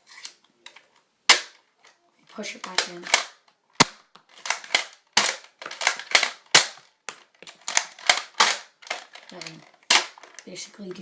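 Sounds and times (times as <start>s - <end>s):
small plastic clicks: 4.2s - 11.0s.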